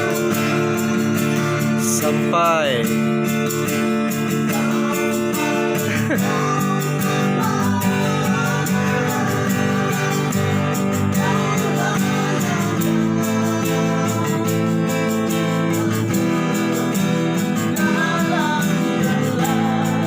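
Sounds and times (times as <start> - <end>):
strummed guitar: 0.0 - 20.0
faint singing: 4.4 - 20.0.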